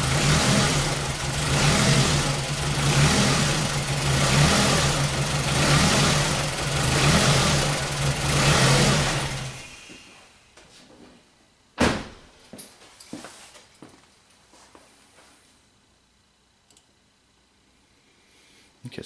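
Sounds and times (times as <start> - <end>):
car engine misfiring: 0.0 - 9.9.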